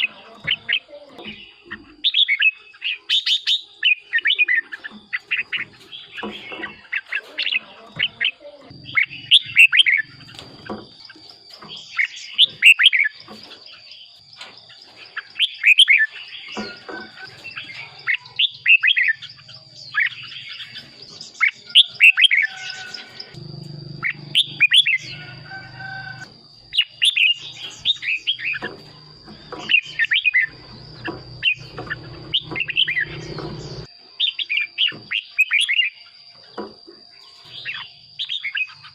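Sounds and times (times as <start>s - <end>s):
bird singing whistled notes: 8.8s - 10.4s, 24.0s - 36.1s.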